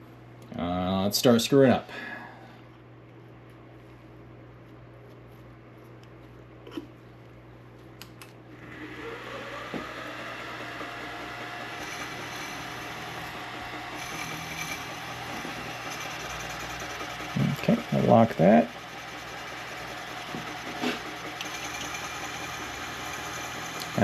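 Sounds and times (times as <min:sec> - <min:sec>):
milling spindle whirring: 0:08.5 - 0:24.0
milling machine clicks: 0:18.8 - 0:24.0.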